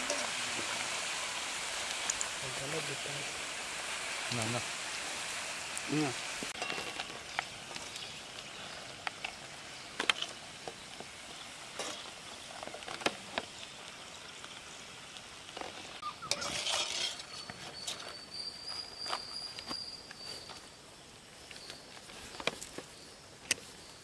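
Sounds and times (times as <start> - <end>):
frying in hot oil: 0.0 - 18.6.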